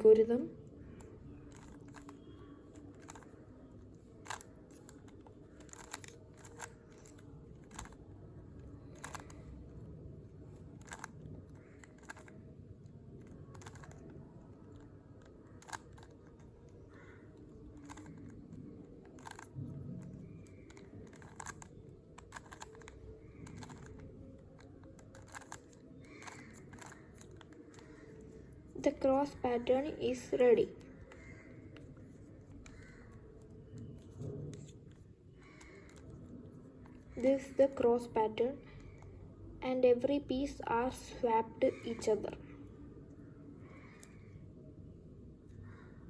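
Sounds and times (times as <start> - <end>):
faint steady hum: 0.0 - 46.0
plastic puzzle cube clicks: 0.6 - 29.4, 30.7 - 37.8.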